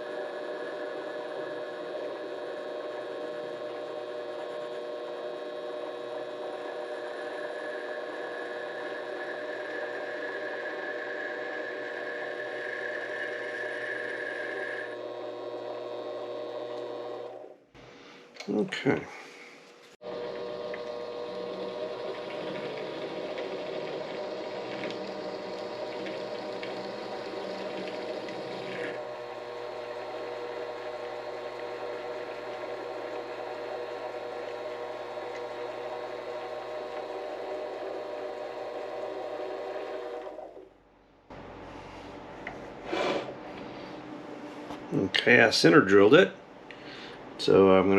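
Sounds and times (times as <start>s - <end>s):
lathe motor whining: 0.0s - 17.6s, 20.0s - 40.7s.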